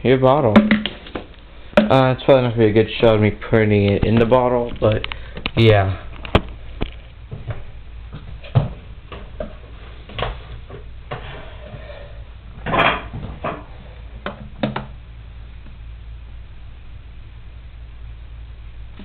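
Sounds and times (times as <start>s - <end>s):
plastic bottles clicking and knocking: 0.6s - 2.0s.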